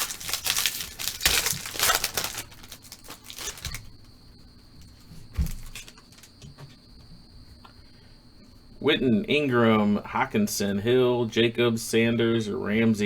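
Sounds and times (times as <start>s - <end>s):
plastic wrapper tearing and crinkling: 0.0s - 3.9s, 5.4s - 6.4s
handling rustle: 0.0s - 4.1s, 4.8s - 6.8s.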